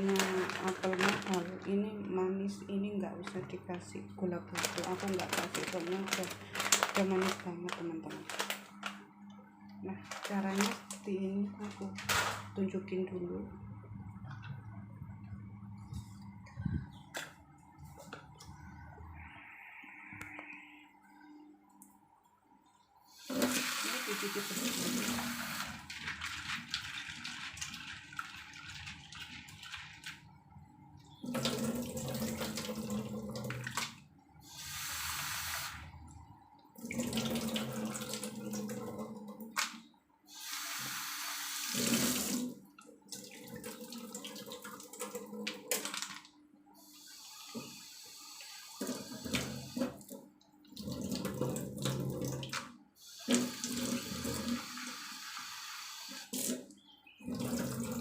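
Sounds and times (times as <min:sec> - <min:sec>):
tap water running into sink: 0:23.2 - 0:30.3, 0:31.2 - 0:34.0, 0:36.8 - 0:39.8, 0:40.8 - 0:46.2, 0:47.1 - 0:56.7, 0:57.3 - 0:58.0.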